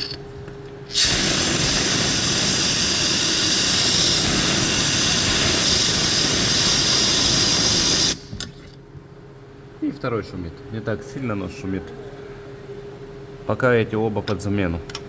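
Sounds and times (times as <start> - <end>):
spinning pulley hissing: 0.9 - 8.4.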